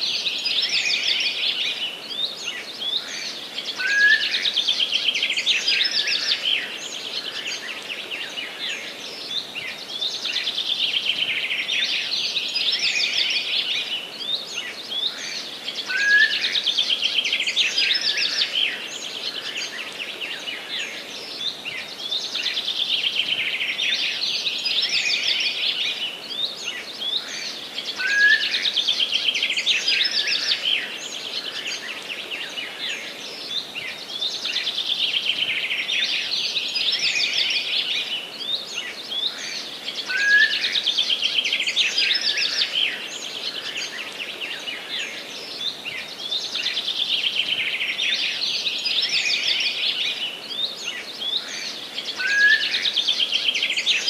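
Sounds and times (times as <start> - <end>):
faint background hiss: 0.0 - 54.0
songbirds chirping and trilling: 0.0 - 54.0.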